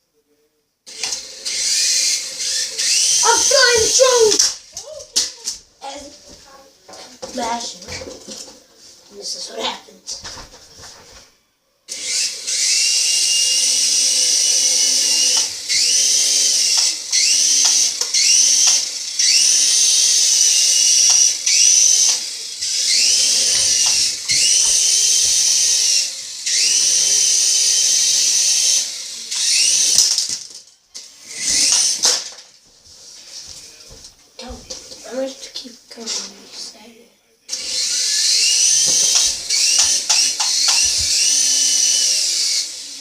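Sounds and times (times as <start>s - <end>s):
toy drone motors whining: 0.9s - 4.6s, 11.9s - 32.4s, 37.5s - 43.0s.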